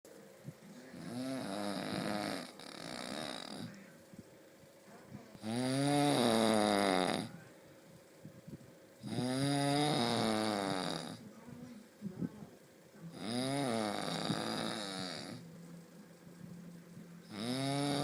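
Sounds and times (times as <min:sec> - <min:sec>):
person snoring heavily: 0:00.9 - 0:03.8, 0:05.4 - 0:07.3, 0:09.0 - 0:11.2, 0:13.1 - 0:15.4, 0:17.2 - 0:18.0.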